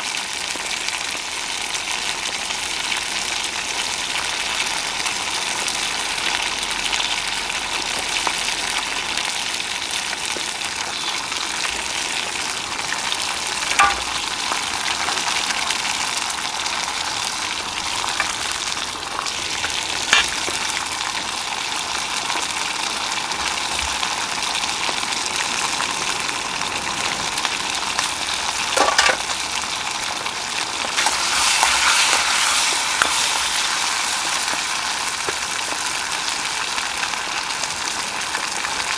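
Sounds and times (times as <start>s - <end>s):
food sizzling in a wok: 0.0s - 38.9s
utensil clicking against pan: 13.6s - 15.4s, 17.8s - 20.6s, 28.7s - 29.4s.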